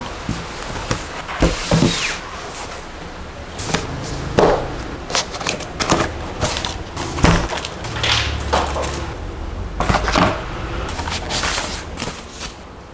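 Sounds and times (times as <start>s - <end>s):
packaging knocks and rustles: 3.6s - 9.2s.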